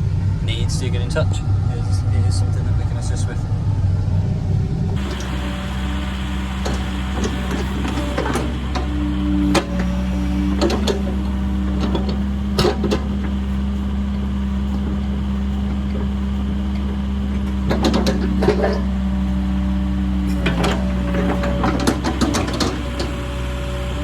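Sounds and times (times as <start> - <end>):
excavator diesel engine running: 0.0 - 24.0
knocks and clanks: 4.6 - 19.0, 20.3 - 23.2.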